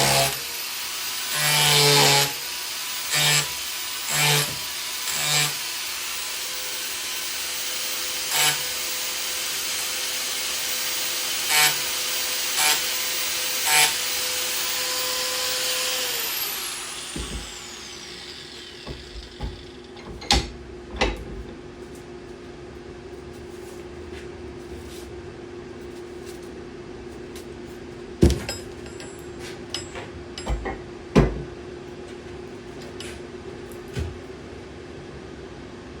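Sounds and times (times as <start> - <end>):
power chisel cutting wood: 0.0 - 20.1.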